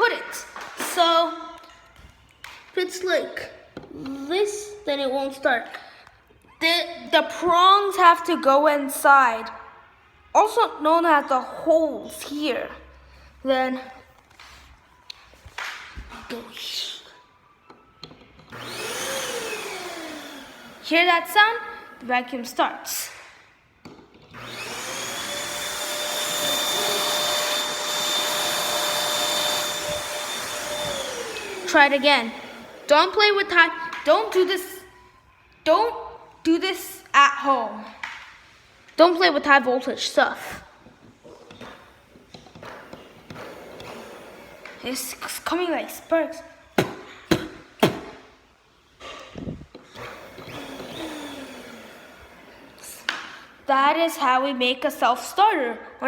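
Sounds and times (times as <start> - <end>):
vacuum cleaner motor whirring: 17.5 - 22.0, 23.1 - 34.0, 40.8 - 48.1, 49.0 - 53.7.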